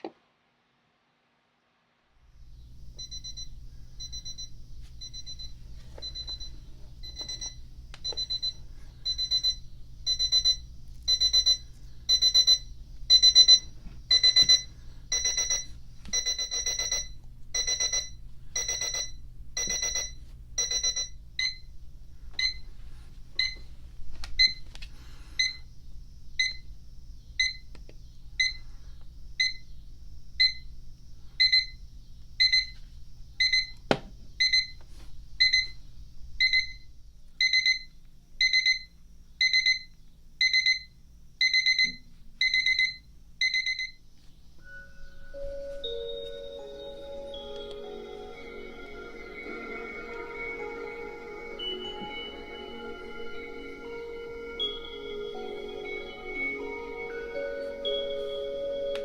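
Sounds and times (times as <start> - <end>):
alarm clock beeping: 3.0 - 21.7, 22.4 - 22.6, 25.4 - 25.6, 31.4 - 31.8, 33.4 - 33.8, 36.4 - 36.8, 37.4 - 44.0, 44.6 - 59.0.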